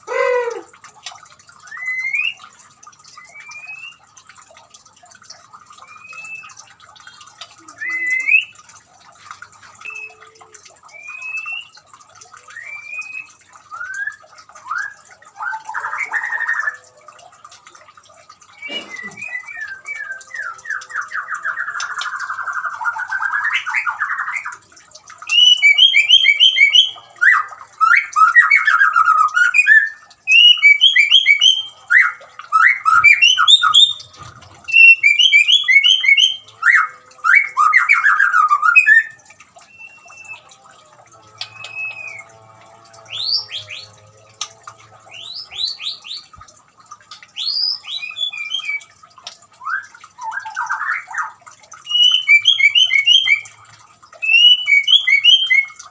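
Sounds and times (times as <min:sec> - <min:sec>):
bird singing whistled phrases: 0:05.8 - 0:06.6, 0:07.7 - 0:08.6, 0:09.8 - 0:10.2, 0:10.9 - 0:11.7, 0:12.4 - 0:16.6, 0:18.6 - 0:21.8, 0:25.3 - 0:27.0, 0:34.7 - 0:40.5, 0:47.4 - 0:48.9, 0:49.6 - 0:53.5, 0:54.2 - 0:55.8.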